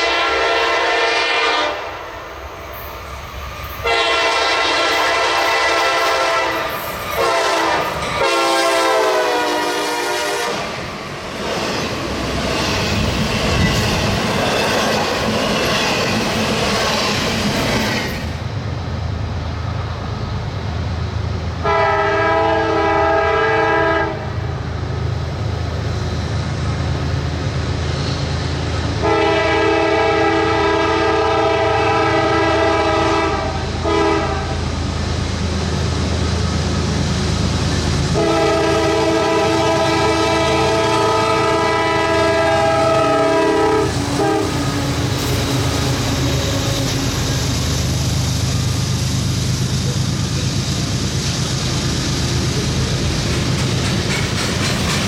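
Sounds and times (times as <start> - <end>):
locomotive air horn: 0.0 - 2.1, 3.8 - 10.8, 21.6 - 24.4, 29.0 - 34.7, 38.2 - 47.5
train rolling by: 0.0 - 55.0
locomotive engine rumble: 24.1 - 55.0.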